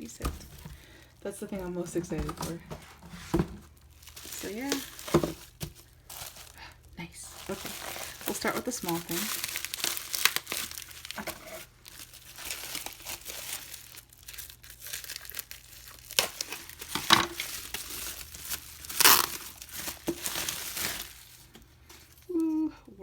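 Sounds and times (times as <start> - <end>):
packaging crinkling and rustling: 0.0 - 22.6
packaging tearing: 3.8 - 21.5.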